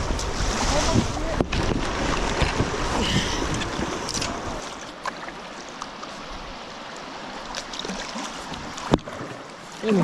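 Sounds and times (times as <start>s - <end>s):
wind buffeting microphone: 0.0s - 4.6s
river water rushing: 0.0s - 10.0s.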